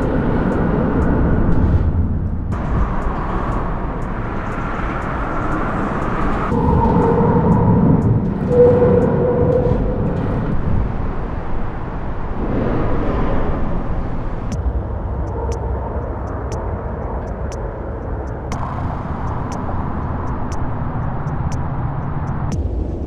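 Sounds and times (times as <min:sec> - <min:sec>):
engine tones: 0:00.0 - 0:22.6
distant traffic rumble: 0:00.0 - 0:22.9
faint high ticks: 0:15.2 - 0:22.6.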